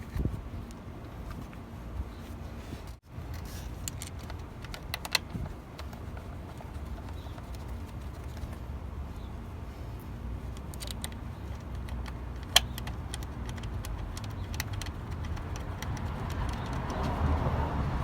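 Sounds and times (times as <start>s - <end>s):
steady low rumble: 0.0s - 18.0s
hand tools clicking and clinking: 10.6s - 17.0s.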